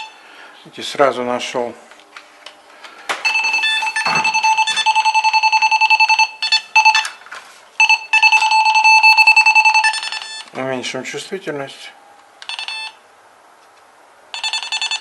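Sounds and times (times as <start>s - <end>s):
probe beeping rapidly: 3.2s - 7.1s, 14.4s - 15.0s.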